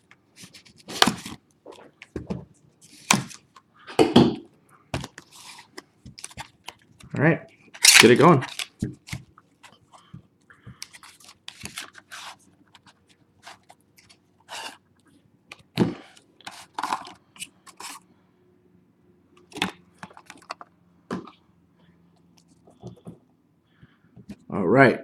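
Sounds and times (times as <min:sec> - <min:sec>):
wrappers crinkling and tearing: 0:07.8 - 0:09.2.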